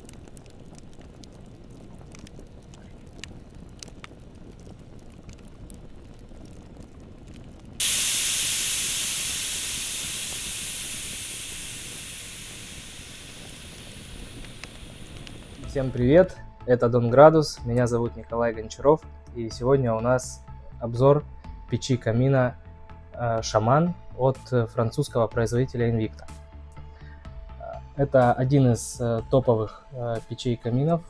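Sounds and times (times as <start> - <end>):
faint clicks: 0.0 - 15.9
loud hiss: 7.8 - 16.4.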